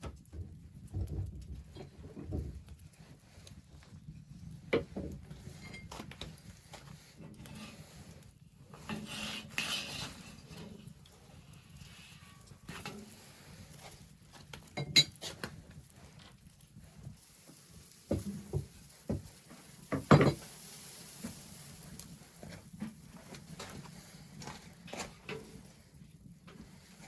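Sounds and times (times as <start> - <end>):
cookware knocking and clattering: 14.8 - 15.2, 19.9 - 20.4.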